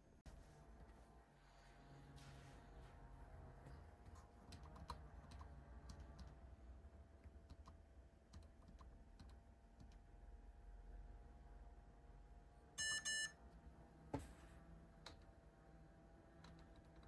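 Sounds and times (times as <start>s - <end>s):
faint keyboard typing: 3.6s - 6.5s, 7.2s - 10.1s, 16.4s - 17.0s.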